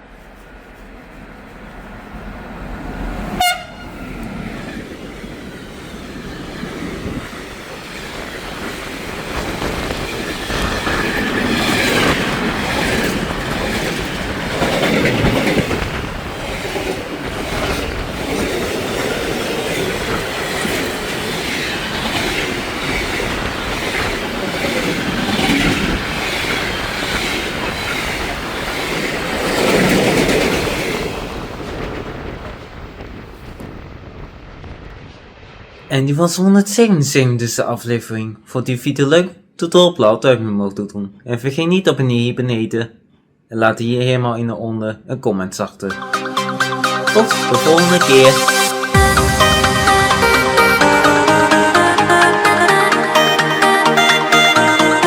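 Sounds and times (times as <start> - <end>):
train running noise: 0.0 - 34.9, 45.9 - 55.0
short train horn toot: 3.4 - 4.2
wheel and rail clatter: 4.1 - 33.2.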